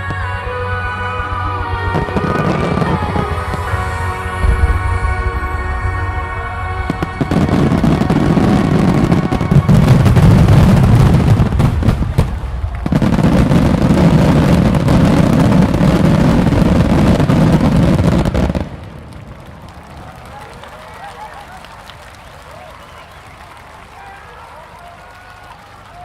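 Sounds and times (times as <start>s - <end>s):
fireworks booming and crackling: 1.7s - 20.6s.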